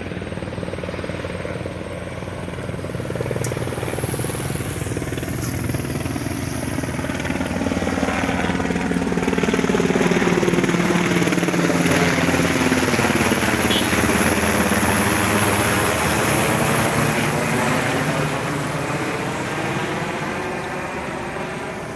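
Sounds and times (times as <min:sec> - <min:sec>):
helicopters flying past: 0:00.0 - 0:21.9.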